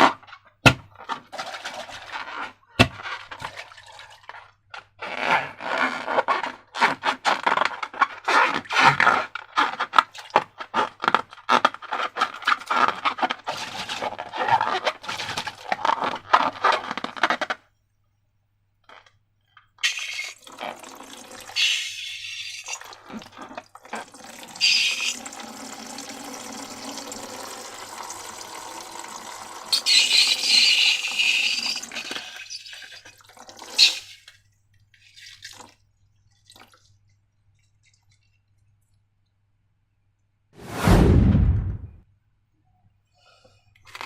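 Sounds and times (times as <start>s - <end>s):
liquid pouring and sloshing: 1.0s - 4.6s, 19.8s - 39.0s.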